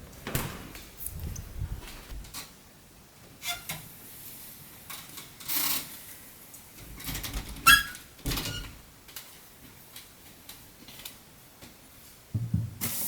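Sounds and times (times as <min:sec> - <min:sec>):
low thump: 0:12.4 - 0:12.8.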